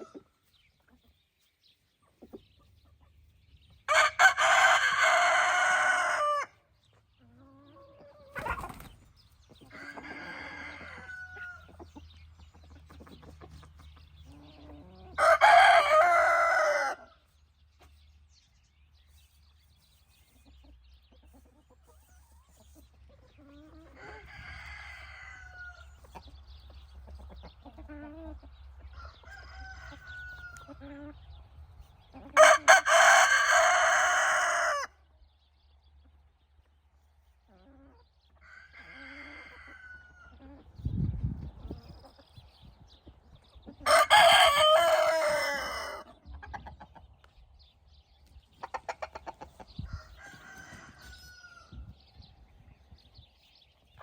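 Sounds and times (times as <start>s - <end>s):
hens clucking: 0.0s - 17.0s, 20.1s - 34.9s, 36.0s - 53.2s
rooster crowing: 3.9s - 6.6s, 9.8s - 11.6s, 15.2s - 17.1s, 32.4s - 35.0s, 43.8s - 46.0s, 49.9s - 51.8s
distant roosters crowing: 3.9s - 6.8s, 9.6s - 12.0s, 14.5s - 17.3s, 23.6s - 26.2s, 28.8s - 30.9s, 32.3s - 35.4s, 38.4s - 40.4s, 43.8s - 46.2s, 48.9s - 52.3s.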